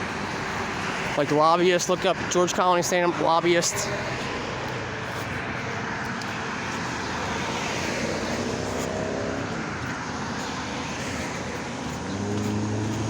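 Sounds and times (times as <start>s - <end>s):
road traffic rushing by: 0.0s - 13.0s
vehicle engine hum passing: 3.2s - 13.0s.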